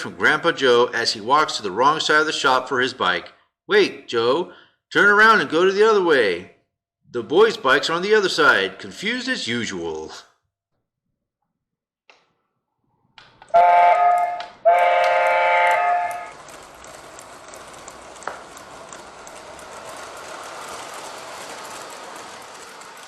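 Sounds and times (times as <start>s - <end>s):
model train rolling on track: 0.0s - 3.4s, 7.4s - 10.2s, 13.4s - 23.0s
model train horn blasts: 13.5s - 16.4s.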